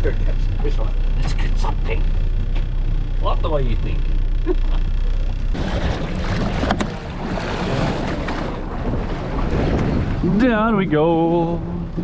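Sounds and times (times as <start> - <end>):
low engine hum: 0.0 - 12.0
wind and water: 0.0 - 12.0
wind buffeting microphone: 5.4 - 12.0.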